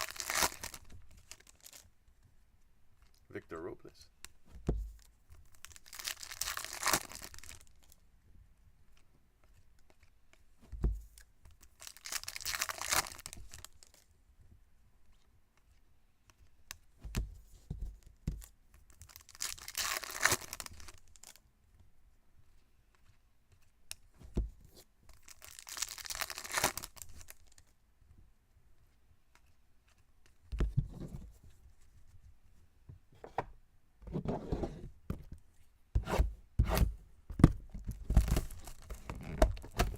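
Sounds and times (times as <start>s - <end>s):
foil wrappers tearing: 0.0s - 1.8s, 11.8s - 13.4s, 25.3s - 27.3s.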